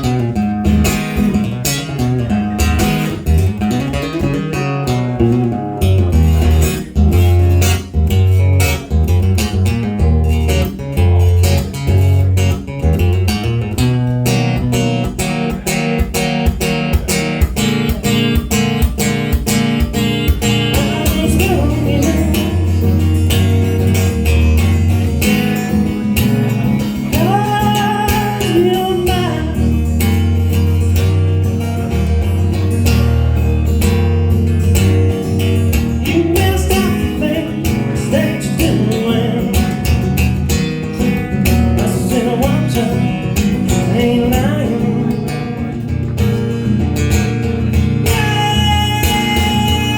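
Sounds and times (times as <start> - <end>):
bass line: 0.0 - 49.9
guitar strumming: 0.0 - 49.9
person singing: 20.4 - 24.2, 26.2 - 30.4, 34.9 - 40.1, 41.8 - 46.1, 48.0 - 49.9.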